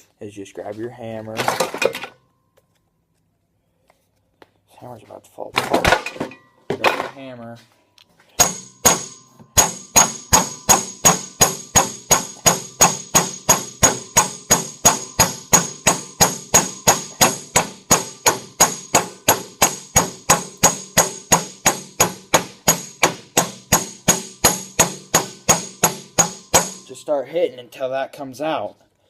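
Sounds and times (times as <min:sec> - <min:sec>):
hammer pounding on metal: 0:08.4 - 0:26.9.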